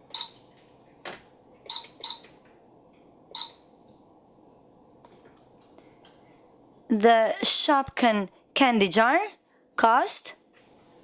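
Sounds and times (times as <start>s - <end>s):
toy cash register beeps: 0.1s - 0.4s, 1.7s - 2.4s, 3.4s - 3.6s.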